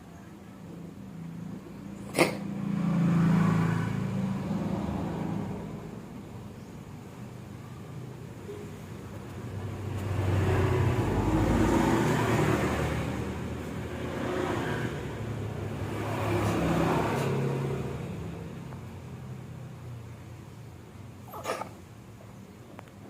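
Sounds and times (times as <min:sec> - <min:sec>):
cat coughing and gagging: 0:02.0 - 0:02.6, 0:21.2 - 0:21.9.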